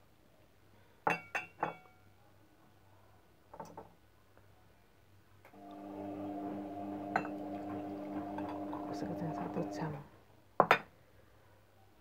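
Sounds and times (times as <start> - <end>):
glass and dishware clinking: 7.1 - 7.6, 8.2 - 9.8.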